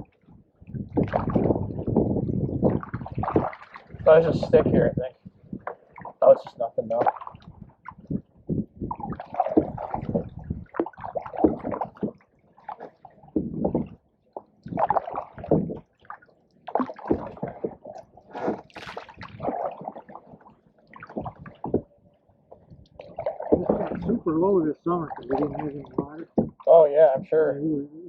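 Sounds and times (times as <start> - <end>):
canoe paddles splashing water: 0.0 - 21.9, 22.6 - 27.2.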